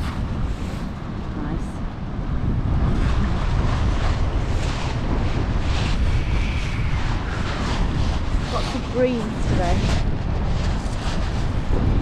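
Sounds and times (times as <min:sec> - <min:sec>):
wind buffeting microphone: 0:00.0 - 0:12.0
surf hissing on shore: 0:06.1 - 0:10.7.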